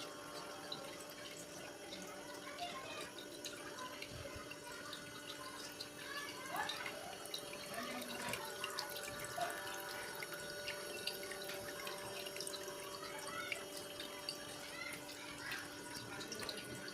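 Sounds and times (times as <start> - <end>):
water fountain trickling: 0.0 - 16.9.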